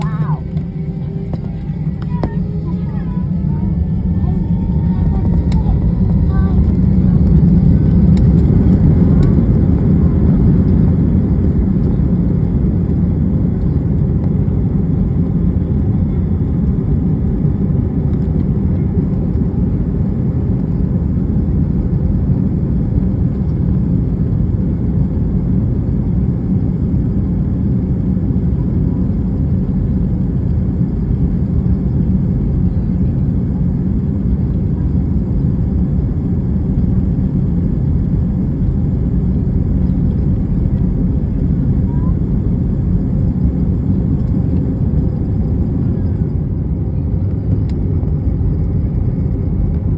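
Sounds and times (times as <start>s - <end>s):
jet engines roaring in cabin: 0.0s - 49.9s.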